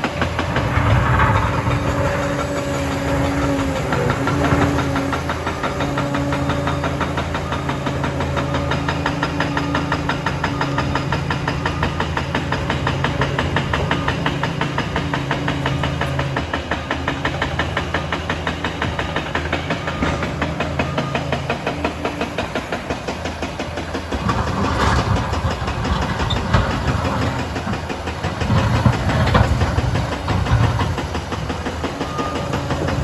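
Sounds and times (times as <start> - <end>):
fast even clatter: 0.0 - 6.0, 23.0 - 33.0
bulldozer diesel engine running: 0.0 - 33.0.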